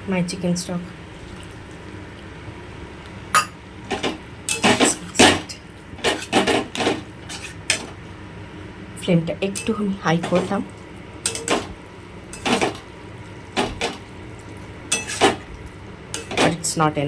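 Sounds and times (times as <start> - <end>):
spoon scraping a cooking pan: 6.0 - 8.0, 11.2 - 11.7, 14.9 - 15.4, 16.2 - 16.6.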